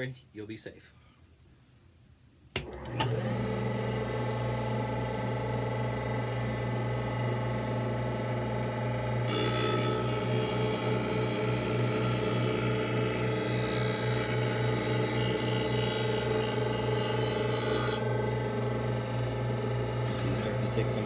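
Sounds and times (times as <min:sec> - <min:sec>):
grinding wheel humming: 0:09.2 - 0:21.0.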